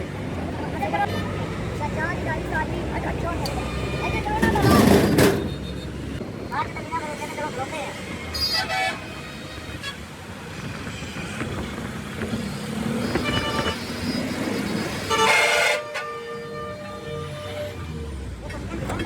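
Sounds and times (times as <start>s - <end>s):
roadside traffic: 0.0s - 19.0s
vehicle horns honking: 3.6s - 6.2s, 8.3s - 10.2s, 10.9s - 18.0s.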